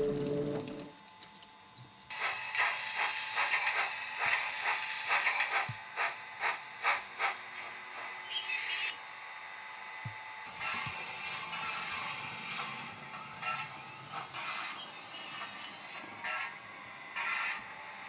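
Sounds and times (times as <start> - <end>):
model train wheels clicking: 2.1 - 8.9
model train running hiss: 2.1 - 18.0.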